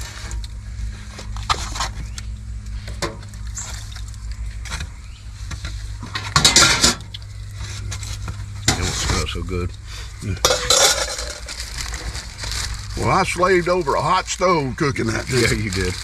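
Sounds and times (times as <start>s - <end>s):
steady low hum: 0.0s - 16.0s
utensils clinking and scraping pans: 4.7s - 13.8s.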